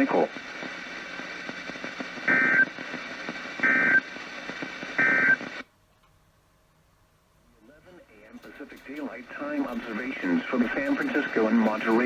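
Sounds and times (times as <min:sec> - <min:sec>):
radio hiss: 0:00.0 - 0:05.7, 0:07.5 - 0:12.0.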